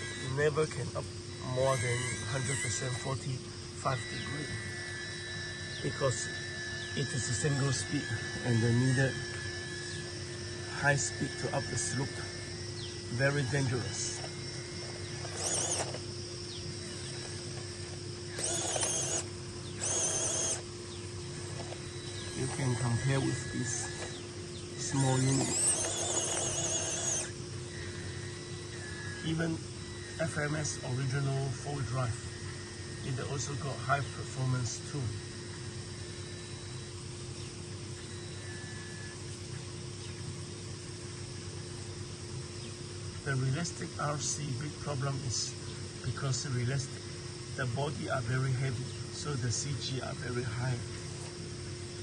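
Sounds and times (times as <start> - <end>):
animal wavering cry: 0.0 - 20.7, 21.3 - 31.1
toy truck motor whining: 0.0 - 20.7, 21.3 - 31.2
faint steady hum: 0.0 - 52.0.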